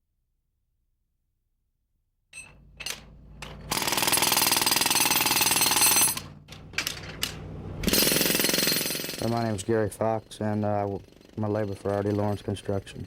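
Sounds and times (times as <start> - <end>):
jackhammer hammering: 2.4 - 13.0.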